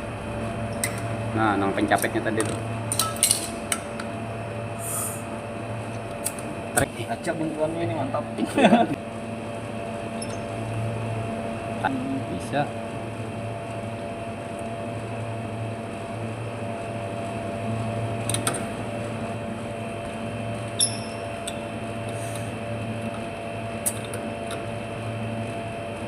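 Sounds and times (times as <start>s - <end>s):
refrigerator compressor hum: 0.0s - 26.0s.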